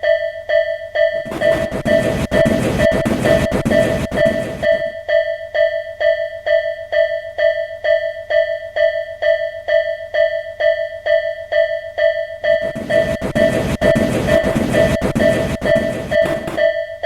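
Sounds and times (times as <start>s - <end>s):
train passing: 1.3s - 4.9s, 12.6s - 16.7s.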